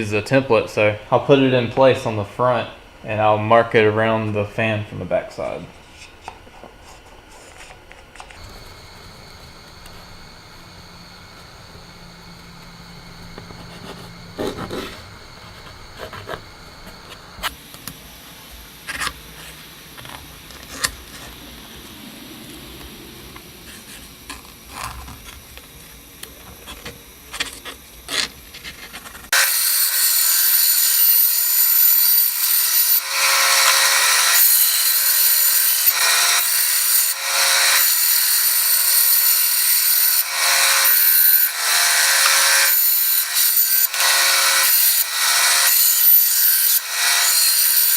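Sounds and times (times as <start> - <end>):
bandsaw cutting plywood: 8.2 - 17.6, 26.6 - 47.9.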